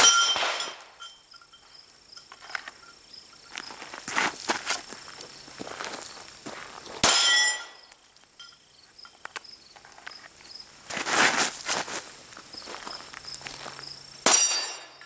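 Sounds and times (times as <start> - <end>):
sharp metallic clang: 0.0 - 2.6, 7.0 - 8.6, 14.2 - 15.0
insects buzzing: 0.8 - 15.0
rustling: 10.9 - 12.1.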